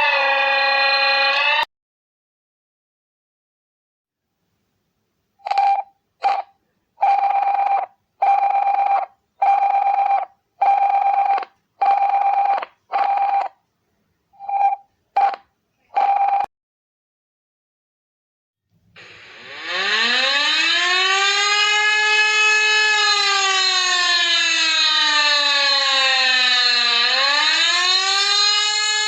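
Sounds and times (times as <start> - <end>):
electronic alert beeps: 14.4 - 15.4.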